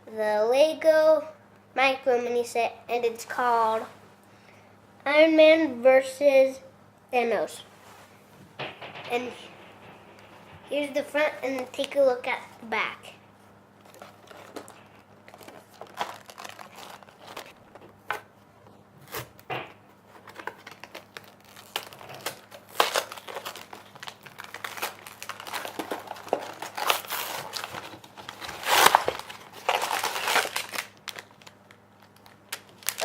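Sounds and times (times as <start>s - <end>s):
plastic bags crinkling: 8.5s - 12.5s, 13.8s - 18.1s, 20.2s - 33.0s
cardboard box tearing: 15.4s - 17.5s.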